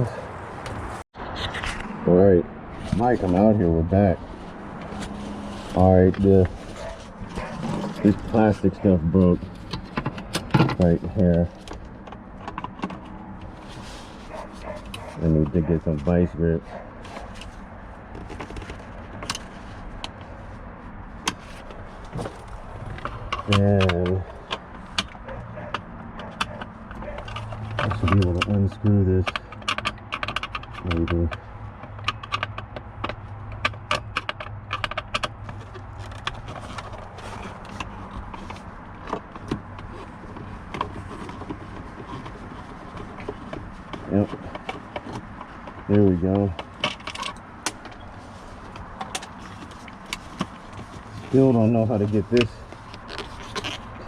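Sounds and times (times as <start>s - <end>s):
hand tools clicking and tapping: 14.2s - 16.0s, 21.2s - 54.0s.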